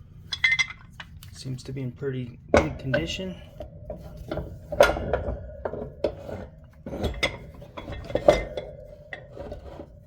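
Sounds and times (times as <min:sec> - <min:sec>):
metal vise parts clanking: 0:00.3 - 0:01.2, 0:03.9 - 0:10.0.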